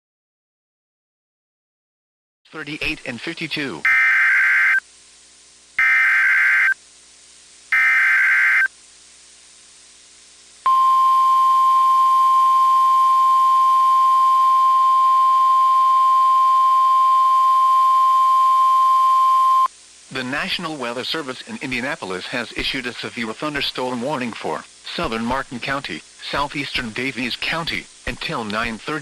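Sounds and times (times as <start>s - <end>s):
steady warning alarm tone: 3.8s - 4.8s, 5.8s - 6.8s, 7.7s - 8.7s.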